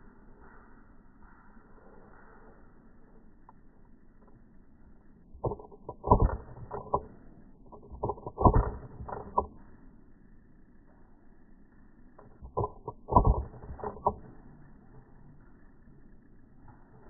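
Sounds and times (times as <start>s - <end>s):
sharp clicks and knocks: 5.2s - 9.8s, 12.1s - 15.0s.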